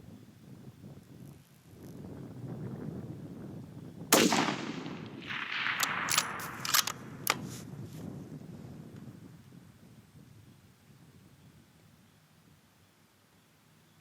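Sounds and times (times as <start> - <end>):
rifle shot: 4.1 - 7.5
rifle bolt clicking: 4.2 - 7.4.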